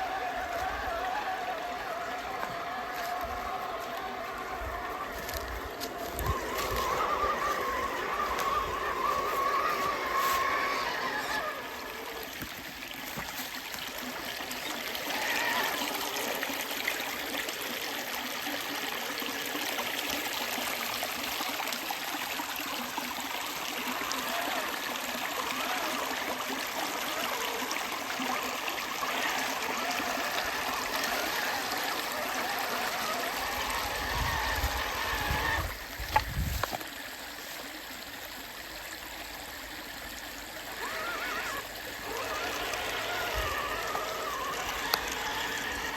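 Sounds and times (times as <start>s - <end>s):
creek water trickling over rocks: 0.0s - 45.9s.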